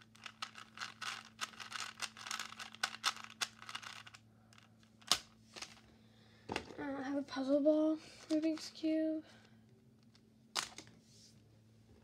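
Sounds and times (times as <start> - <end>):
rubik's cube clicking turns: 0.1 - 4.2.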